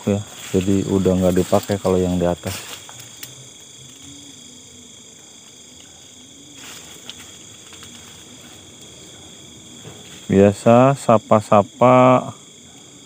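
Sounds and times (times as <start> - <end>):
insects chirping: 0.0 - 13.0
soft rustle: 6.4 - 10.4.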